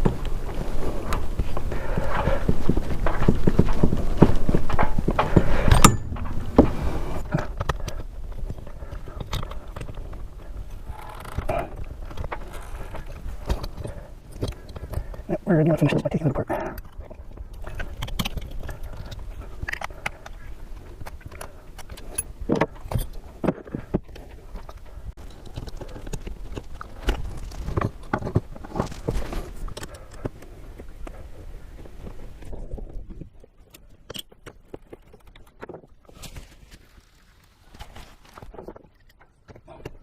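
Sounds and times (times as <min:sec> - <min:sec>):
low rumble: 0:00.0 - 0:13.5
hand tools clicking and rattling: 0:03.0 - 0:06.6.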